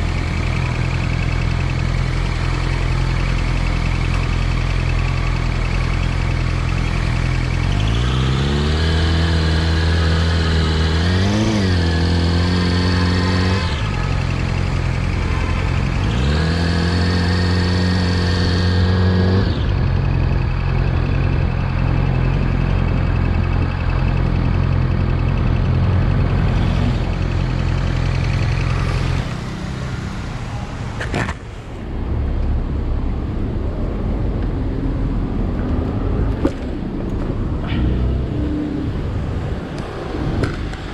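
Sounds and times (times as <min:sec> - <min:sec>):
motorcycle engine revving: 0:00.0 - 0:32.0.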